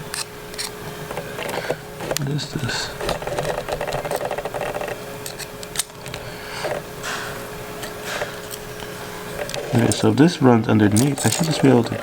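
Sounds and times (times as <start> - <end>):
steady hum: 0.0 - 12.0
fast rattle: 1.1 - 5.4, 9.2 - 12.0
small tools clicking: 3.0 - 6.8, 10.8 - 12.0.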